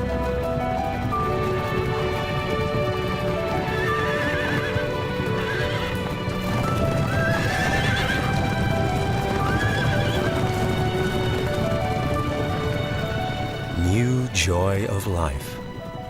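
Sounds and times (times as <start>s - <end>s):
background music: 0.0s - 16.0s
rumble of hoofbeats: 0.0s - 16.0s
horses whinnying: 1.3s - 13.8s.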